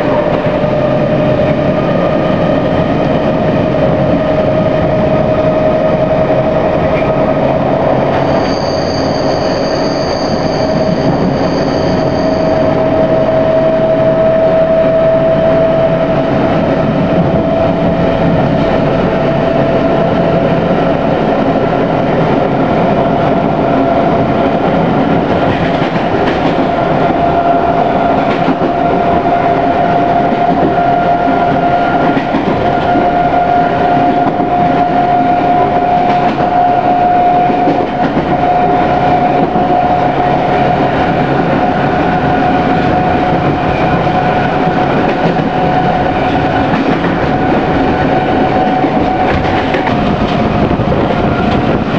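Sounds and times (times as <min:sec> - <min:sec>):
train rumbling and whining: 0:00.0 - 0:51.9
high-pitched squeal: 0:07.9 - 0:16.5.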